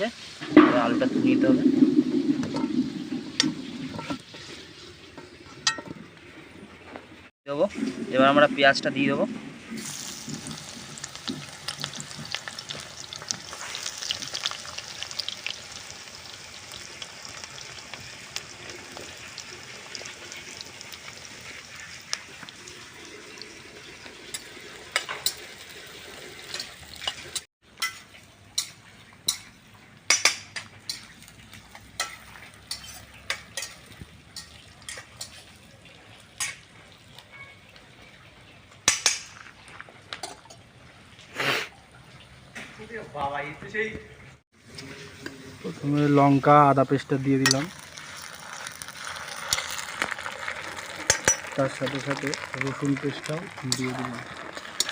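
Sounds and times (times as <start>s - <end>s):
onions sizzling in oil: 0.0s - 0.5s, 9.7s - 29.6s, 30.2s - 37.2s, 44.6s - 54.9s
spatula scraping and clinking pan: 27.8s - 35.4s.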